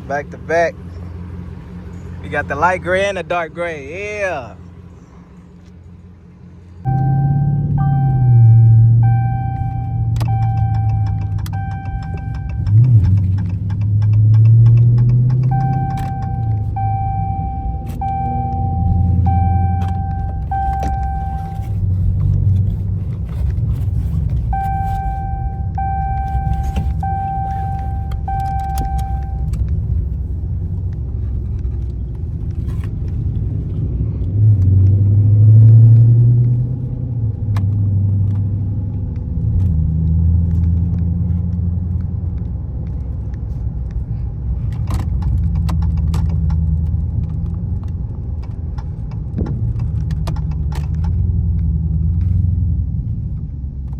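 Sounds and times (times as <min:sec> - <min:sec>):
car engine idling: 0:00.0 - 0:34.3
car warning chime beeping: 0:06.8 - 0:13.3, 0:14.3 - 0:21.8, 0:24.4 - 0:29.6.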